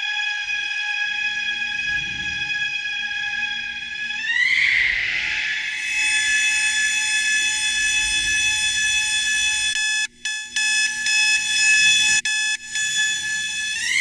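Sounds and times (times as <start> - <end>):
reverberant alarm clock beeping: 4.2 - 14.0.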